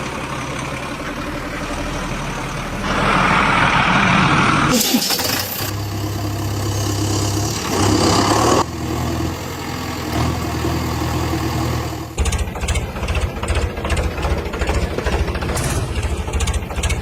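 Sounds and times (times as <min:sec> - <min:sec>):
vehicle engine idling: 0:00.0 - 0:04.7, 0:08.6 - 0:17.0.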